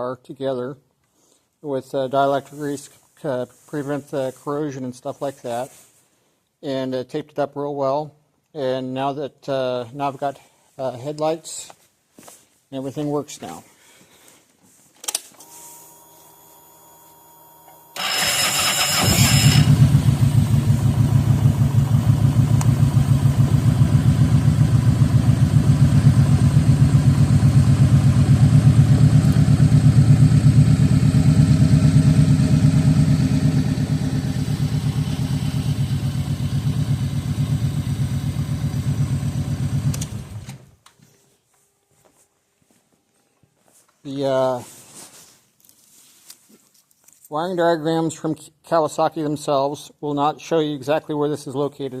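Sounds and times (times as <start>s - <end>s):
starter motor cranking: 18.0s - 20.3s
motorcycle engine idling: 18.0s - 40.4s.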